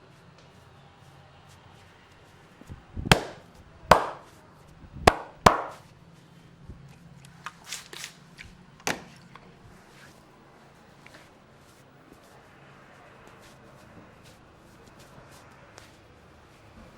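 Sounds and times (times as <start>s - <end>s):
hand slaps on skin: 3.1s - 4.3s, 5.1s - 5.8s
light hand taps: 3.1s - 4.3s, 5.1s - 5.8s.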